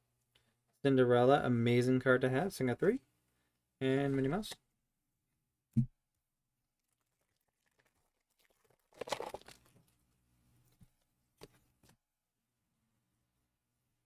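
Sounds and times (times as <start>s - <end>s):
foil wrapper tearing and crinkling: 7.1s - 9.8s.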